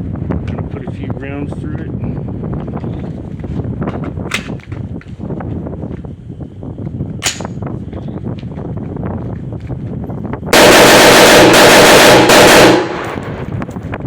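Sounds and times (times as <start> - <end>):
gunshots: 10.6 - 13.4.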